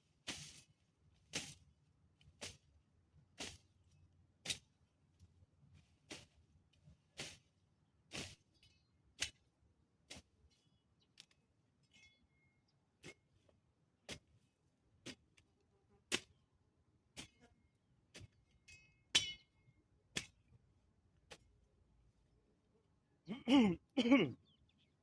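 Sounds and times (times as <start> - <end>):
hand tool striking with metallic ring: 18.6 - 20.4.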